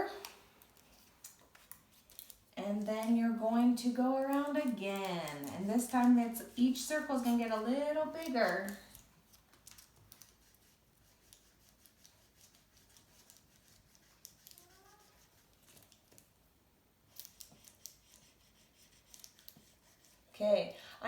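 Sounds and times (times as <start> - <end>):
marker scratching on paper: 10.1 - 16.0, 17.1 - 20.3.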